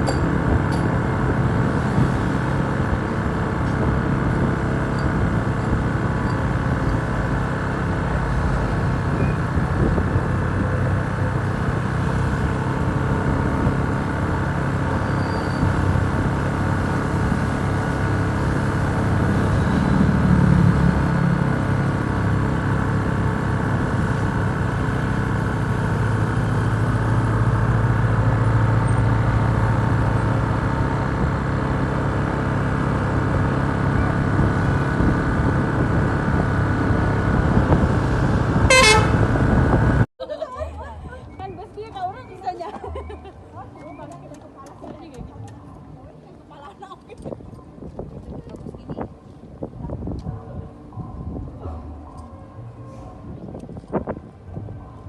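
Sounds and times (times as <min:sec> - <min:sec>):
bus engine running: 0:00.0 - 0:55.0.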